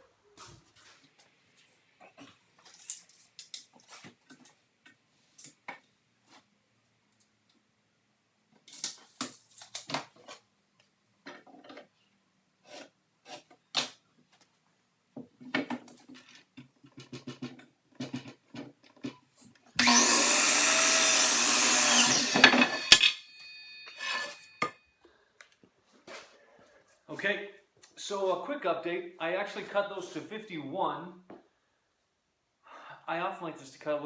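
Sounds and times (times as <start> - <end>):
electric saw cutting wood: 19.8 - 24.5.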